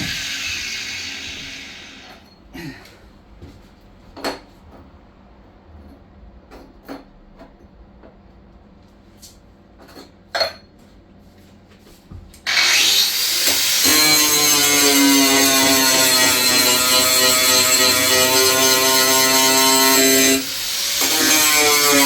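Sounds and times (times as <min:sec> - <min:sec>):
power tool whining: 0:00.0 - 0:02.2, 0:12.5 - 0:22.0.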